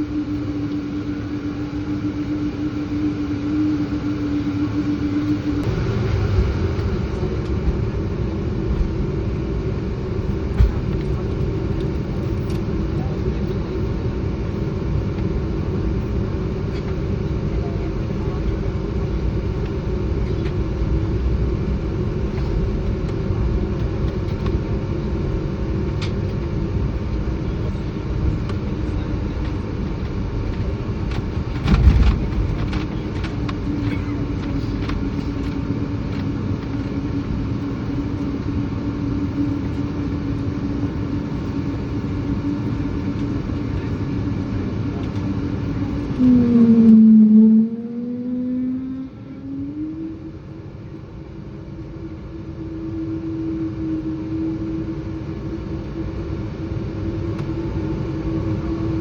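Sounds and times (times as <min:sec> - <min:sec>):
loud jet engine roar: 0:00.0 - 0:30.3, 0:38.5 - 0:51.0
low moaning tone bending in pitch: 0:45.7 - 0:50.8, 0:52.3 - 0:56.2.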